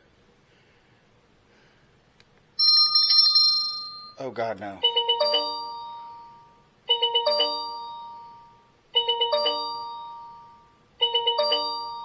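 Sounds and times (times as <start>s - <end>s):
doorbell chime tune: 2.6s - 4.2s, 4.8s - 12.0s.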